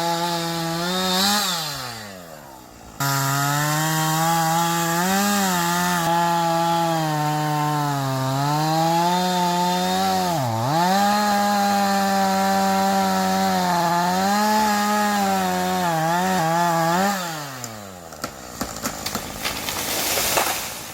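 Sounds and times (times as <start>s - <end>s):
chainsaw cutting wood: 0.0s - 20.9s
sharp cracks and knocks: 17.6s - 20.9s.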